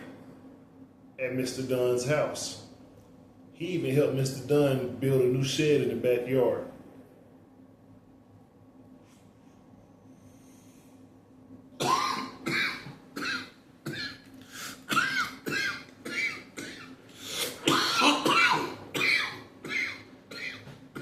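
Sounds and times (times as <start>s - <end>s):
man coughing hard: 11.8s - 14.2s, 14.9s - 21.0s.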